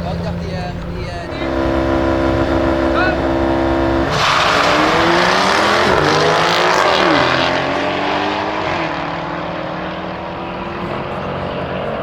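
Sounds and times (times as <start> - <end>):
car engine accelerating hard: 0.0 - 12.0.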